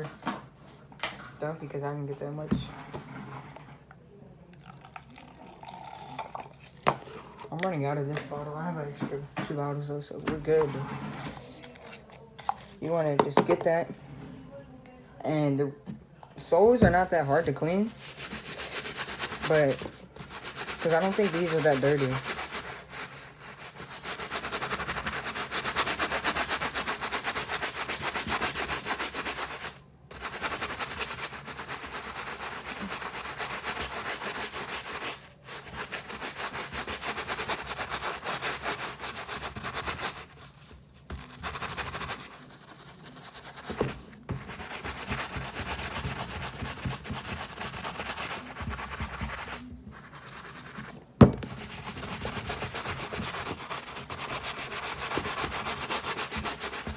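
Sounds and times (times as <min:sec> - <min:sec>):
brush scrubbing rubber soles: 0:16.5 - 0:56.9.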